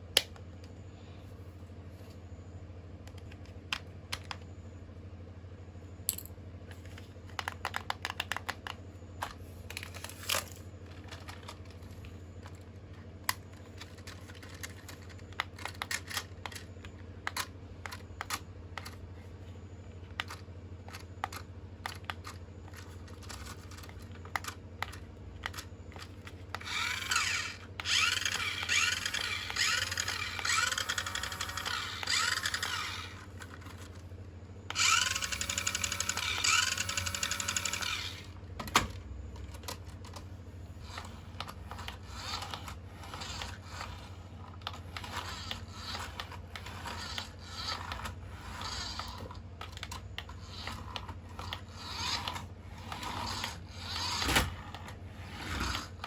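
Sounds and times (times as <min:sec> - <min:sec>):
steady low hum: 0:00.0 - 0:56.0
electric toy motor whirring: 0:20.2 - 0:34.1, 0:34.7 - 0:38.4, 0:40.8 - 0:56.0.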